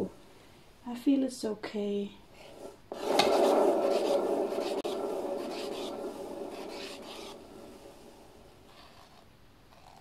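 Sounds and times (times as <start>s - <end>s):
turntable bearing whirring: 2.4s - 8.6s.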